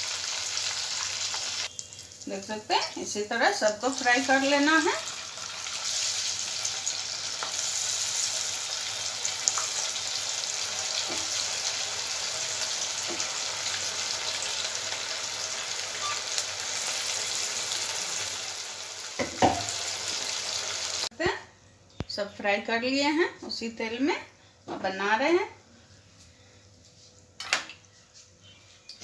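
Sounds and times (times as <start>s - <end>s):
chicken deep-frying in oil: 0.0s - 21.1s.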